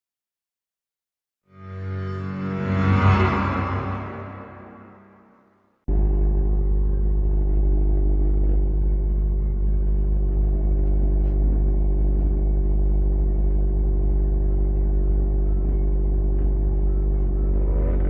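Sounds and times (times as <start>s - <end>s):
motorcycle engine running: 5.9s - 18.0s.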